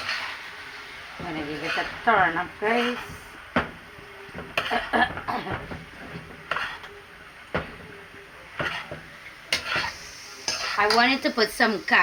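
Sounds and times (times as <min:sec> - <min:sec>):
spoon scraping cooking pot: 0:00.0 - 0:00.4, 0:01.2 - 0:11.2
rice frying: 0:00.0 - 0:12.0.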